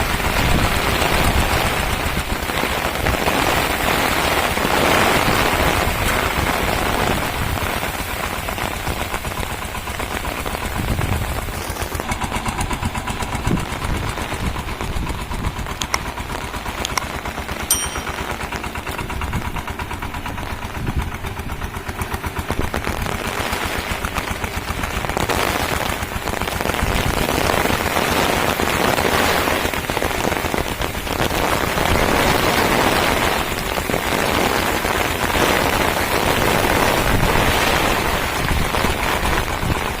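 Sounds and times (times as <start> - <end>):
diesel engine chugging: 6.4 - 17.5, 19.0 - 25.2.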